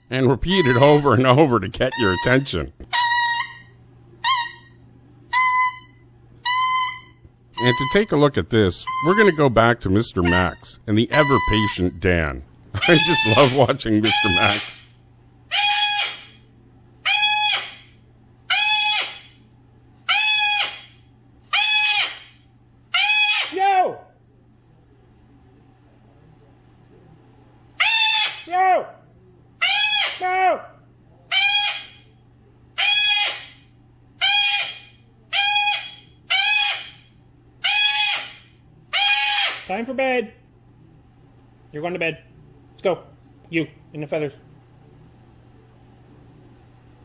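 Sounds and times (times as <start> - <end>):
parakeet mimicked call: 12.8 - 14.8, 15.5 - 16.4, 17.0 - 17.9, 18.5 - 19.4, 20.0 - 23.9, 27.8 - 28.6, 29.6 - 30.4, 31.3 - 32.0, 32.8 - 33.6, 34.2 - 37.0, 37.6 - 39.7.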